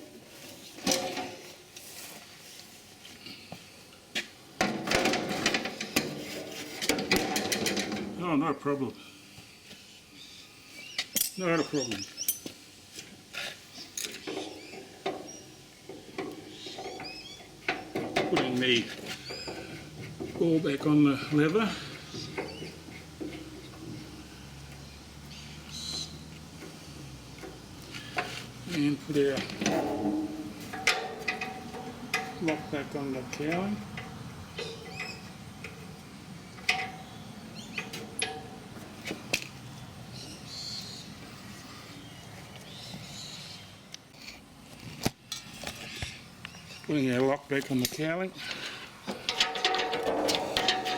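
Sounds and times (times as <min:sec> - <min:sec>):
metal parts clicking and knocking: 0:49.1 - 0:50.9.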